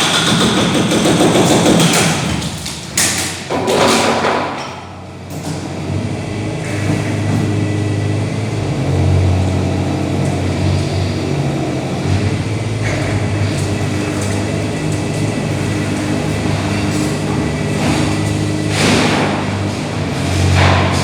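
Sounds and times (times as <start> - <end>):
diesel engine running: 5.0 - 21.0.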